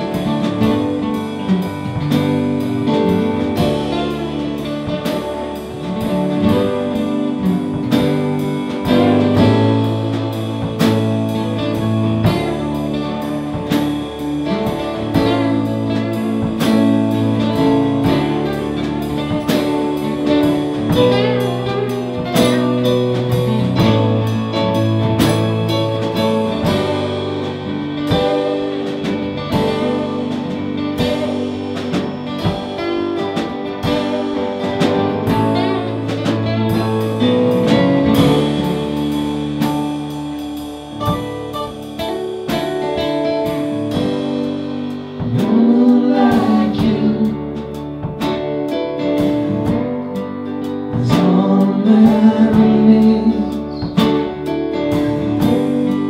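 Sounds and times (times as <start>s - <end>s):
wordless singing: 45.4s - 47.6s.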